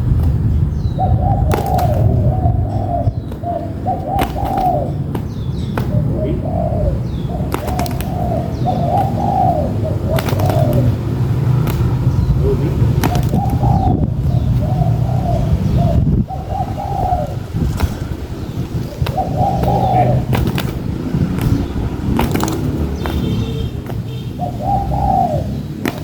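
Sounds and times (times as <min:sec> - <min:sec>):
steady low rumble: 0:00.0 - 0:25.8
doves cooing: 0:00.0 - 0:26.0
sharp clicks: 0:07.5 - 0:08.4, 0:10.1 - 0:12.2, 0:13.0 - 0:13.6, 0:17.6 - 0:24.1.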